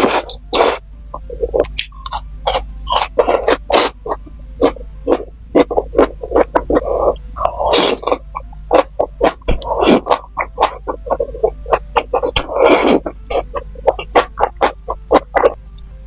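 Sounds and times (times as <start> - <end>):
person chewing and lip-smacking: 0.0 - 15.6
low steady hum: 0.0 - 16.0.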